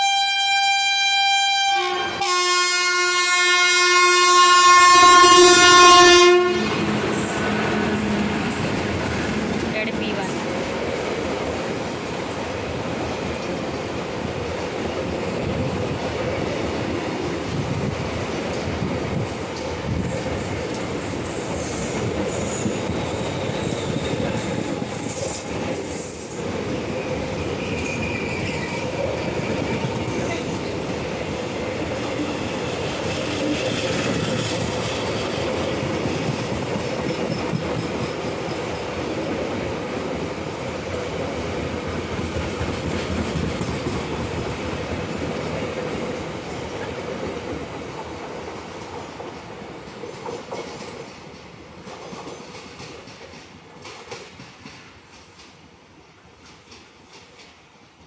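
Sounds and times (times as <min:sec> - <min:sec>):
train wheels rumbling on track: 0:01.6 - 0:58.0
clickety-clack over rail joints: 0:06.7 - 0:57.7
high-pitched wheel squeal: 0:27.6 - 0:30.4.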